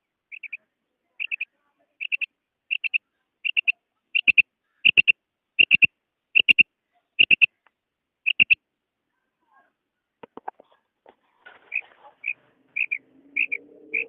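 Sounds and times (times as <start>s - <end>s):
quail calling: 0.3s - 6.6s, 7.2s - 7.6s, 8.2s - 8.6s, 11.6s - 14.0s.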